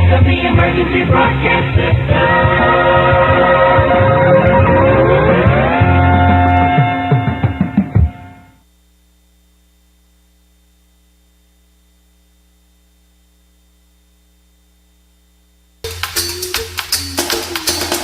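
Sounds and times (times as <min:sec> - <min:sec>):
drum-backed music: 0:00.0 - 0:08.5, 0:15.8 - 0:18.0
low electrical hum: 0:08.1 - 0:16.9.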